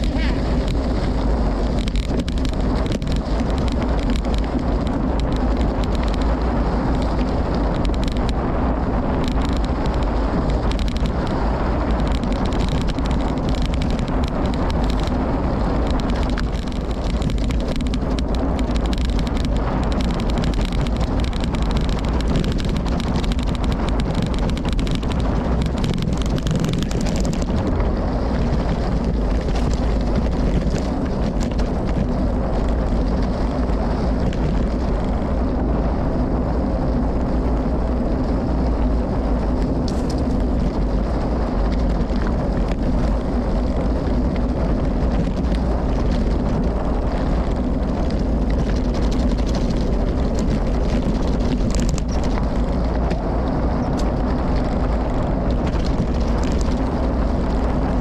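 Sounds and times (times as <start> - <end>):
bike clicks and rattles: 0.0 - 58.0
bike tyre noise on dirt: 0.0 - 58.0
wind rushing over microphone: 0.0 - 58.0.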